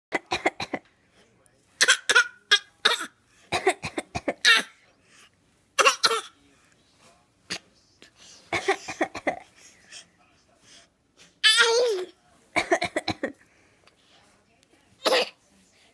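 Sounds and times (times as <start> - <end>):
adult coughing: 2.9 - 4.7, 5.8 - 6.4, 8.5 - 9.5, 12.6 - 13.4, 15.0 - 15.4
child pretend coughing: 15.0 - 15.4.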